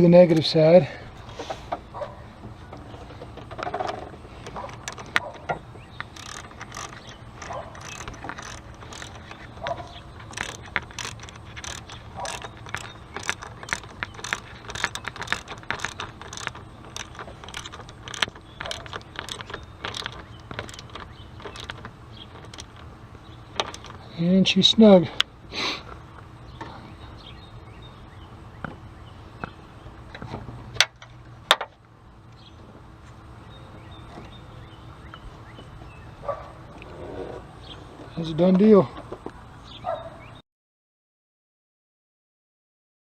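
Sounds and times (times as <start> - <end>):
wrench quick metallic clicks: 6.1 - 22.8.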